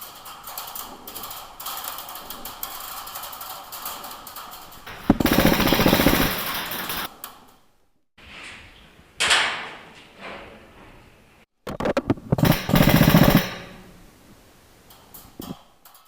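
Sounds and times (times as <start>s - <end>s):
rapid clicking of shots: 0.0s - 7.4s, 12.4s - 14.0s
airsoft gun full-auto burst: 4.9s - 7.1s, 12.4s - 14.0s.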